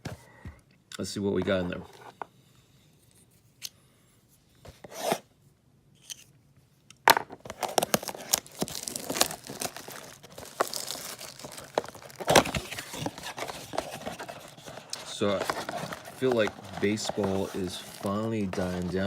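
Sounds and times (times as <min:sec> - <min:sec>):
packaging tearing and crinkling: 0:07.4 - 0:19.0.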